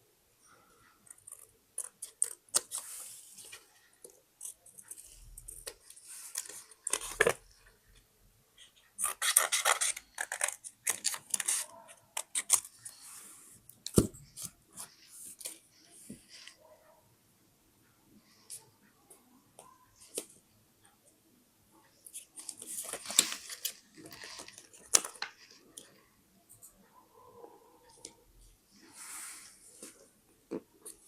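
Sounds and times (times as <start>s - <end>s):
paper rustling and crinkling: 22.4s - 25.6s.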